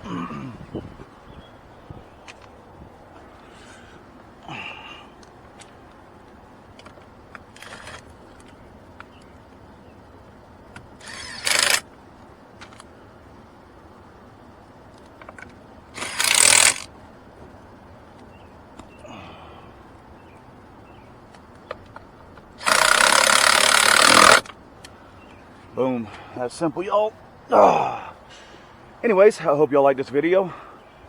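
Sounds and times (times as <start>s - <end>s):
cordless power driver running: 10.8s - 11.9s, 15.9s - 16.9s, 22.6s - 24.5s.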